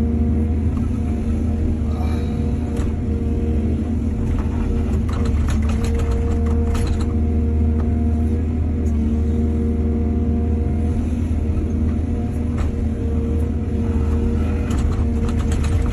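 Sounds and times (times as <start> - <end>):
heavy diesel engine drone: 0.0 - 15.9.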